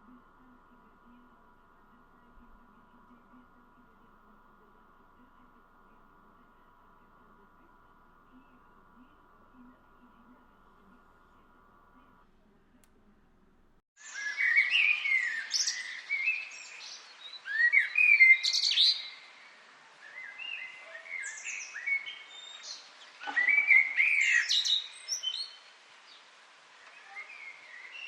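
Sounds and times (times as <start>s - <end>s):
birds chirping and singing: 14.0s - 28.0s.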